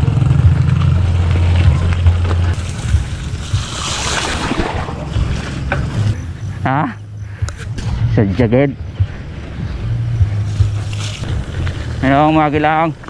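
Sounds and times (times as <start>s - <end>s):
bike rattling and knocking: 0.0s - 6.2s
wind rumbling on microphone: 0.0s - 13.0s.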